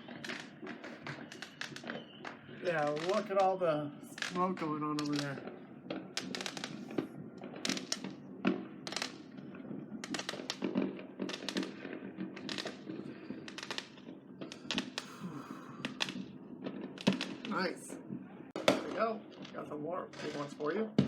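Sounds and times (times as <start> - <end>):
fireworks bangs and pops: 0.0 - 21.0
hissing crackle of fireworks: 0.0 - 21.0.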